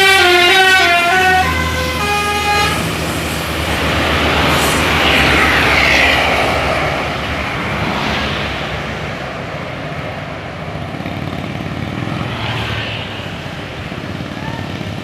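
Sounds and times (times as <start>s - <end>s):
diesel bus engine rumble: 0.0s - 15.0s
tyre and road roar: 0.0s - 15.0s.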